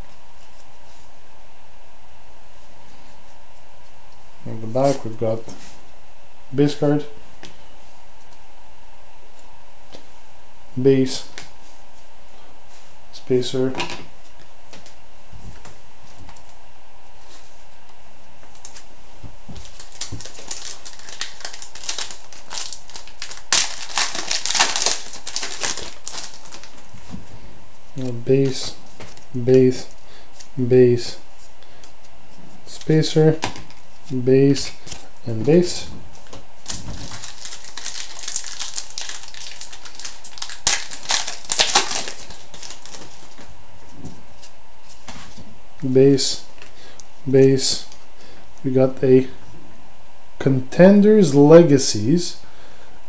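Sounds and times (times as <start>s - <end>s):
trading card packaging crinkling: 19.5s - 27.2s, 33.6s - 43.5s.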